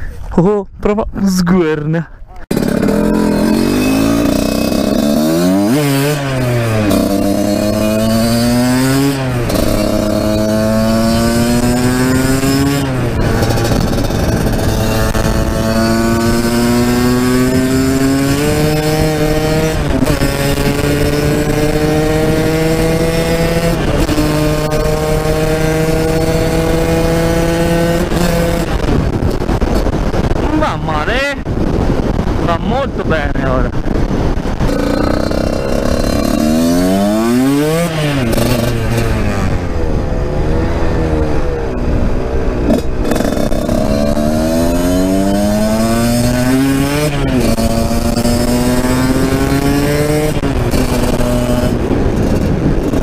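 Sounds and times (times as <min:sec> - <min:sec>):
two-stroke motorcycle engine accelerating: 0:02.5 - 0:30.7, 0:33.1 - 0:53.0
engine blips: 0:34.0 - 0:53.0.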